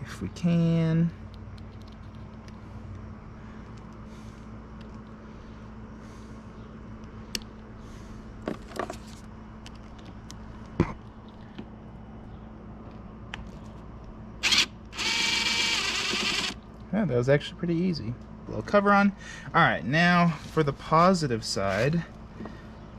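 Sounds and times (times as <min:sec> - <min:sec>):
steady low hum: 0:00.0 - 0:22.9
cordless driver whirring: 0:14.4 - 0:16.6.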